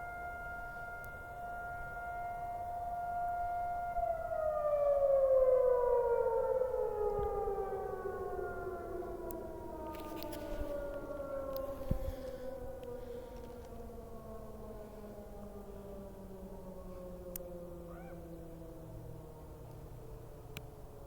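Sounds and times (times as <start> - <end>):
siren winding down: 0.0 - 20.6.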